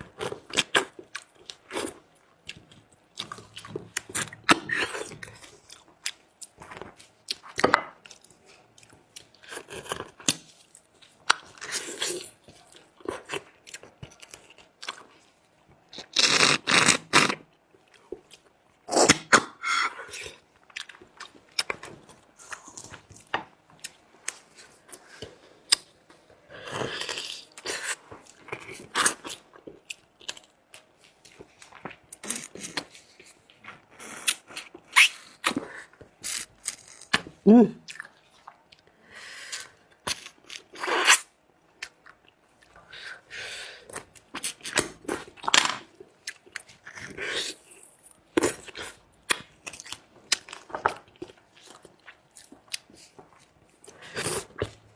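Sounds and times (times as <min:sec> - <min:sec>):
chewing and crunching bones: 0:00.1 - 0:26.0, 0:43.8 - 0:54.9.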